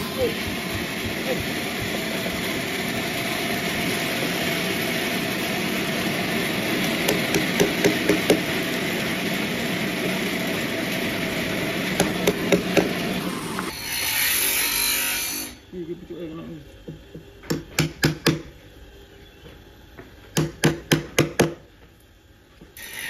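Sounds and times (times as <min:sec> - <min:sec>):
loud rushing hiss: 0:00.0 - 0:13.8
sawmill machinery running: 0:00.0 - 0:17.6
hammer-like knocks: 0:07.1 - 0:08.4.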